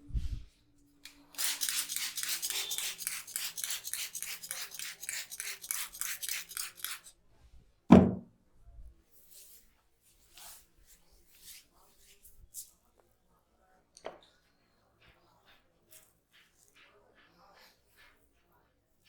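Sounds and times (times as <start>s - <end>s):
rubbing strokes on hair and scalp: 1.3s - 7.1s
loud sharp thump: 7.9s - 8.2s.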